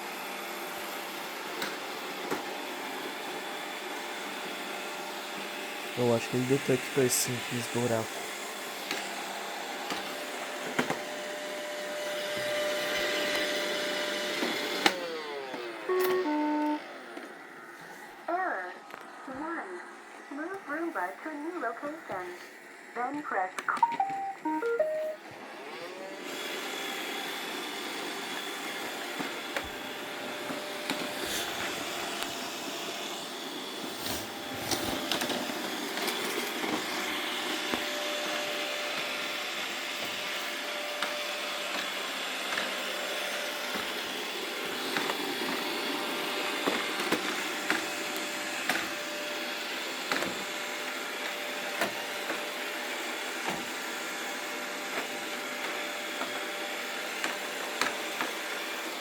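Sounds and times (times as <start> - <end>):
robot vacuum running: 0.2 - 59.0
short electronic tones: 23.7 - 25.2.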